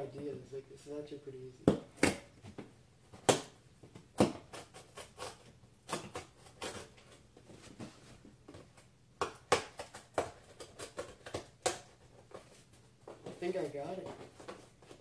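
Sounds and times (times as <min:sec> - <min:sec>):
letter opener cutting cardboard: 0:04.1 - 0:07.2.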